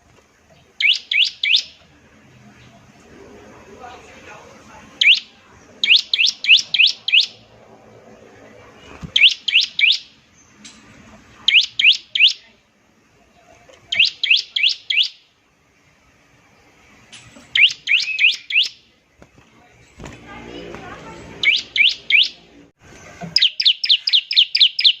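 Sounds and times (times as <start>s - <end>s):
bird singing sharp high chips: 5.0s - 7.4s, 17.5s - 18.8s, 23.4s - 25.0s.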